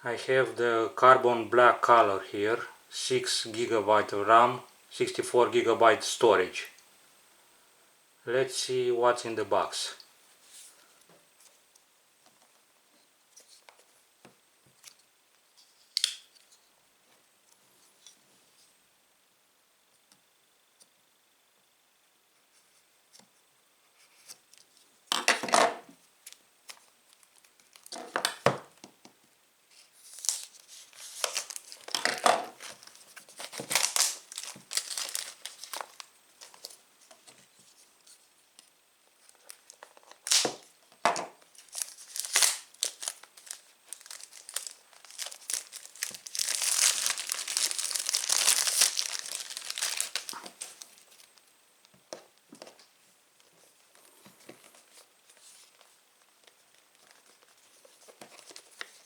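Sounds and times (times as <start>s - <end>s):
plastic wrapping tearing and crinkling: 30.0s - 36.8s, 39.3s - 40.6s, 41.5s - 51.3s.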